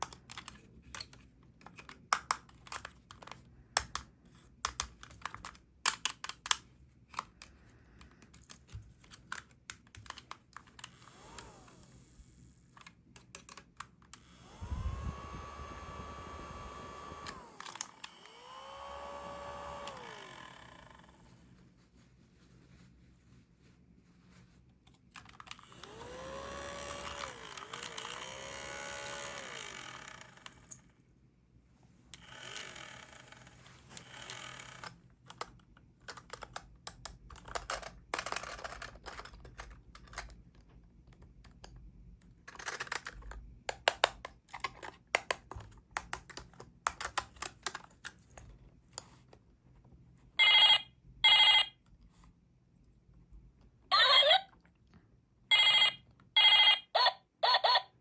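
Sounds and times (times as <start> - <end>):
small clicks and taps: 0.0 - 11.0, 35.3 - 49.4
toy electronic ring tone: 50.4 - 51.8, 53.9 - 54.4, 55.5 - 57.9.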